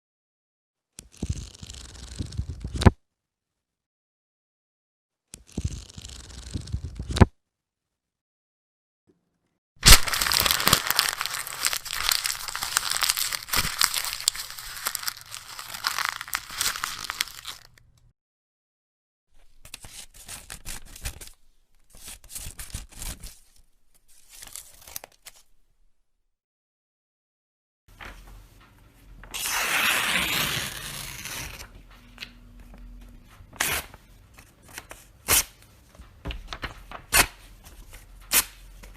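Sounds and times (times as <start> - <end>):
paper snapping: 9.8 - 17.8
paper crackling: 9.8 - 17.9, 19.4 - 25.6.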